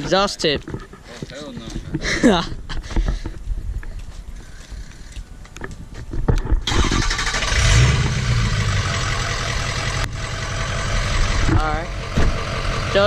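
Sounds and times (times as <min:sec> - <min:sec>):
diesel engine starting and idling: 0:06.7 - 0:13.0.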